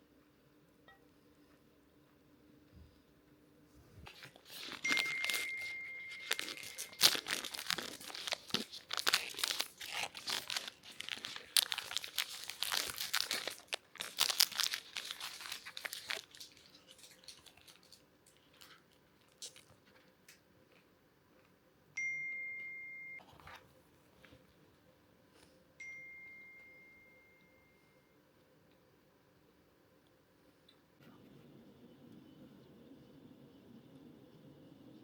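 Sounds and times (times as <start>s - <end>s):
wrapping crinkling and tearing: 4.0s - 20.1s
thin steady tone: 4.8s - 7.0s, 22.0s - 23.2s, 25.8s - 28.3s.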